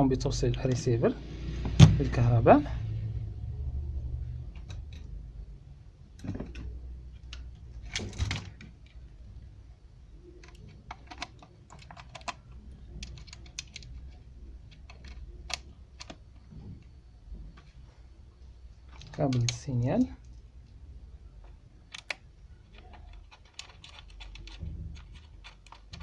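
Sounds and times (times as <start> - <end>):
sharp clicks of handling: 21.4 - 26.0.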